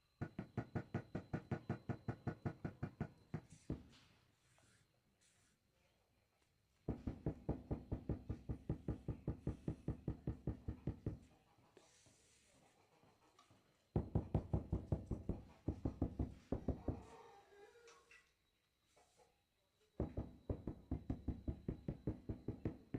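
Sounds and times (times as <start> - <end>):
rapid knocking on floor tiles: 6.9 - 11.3, 20.0 - 22.9.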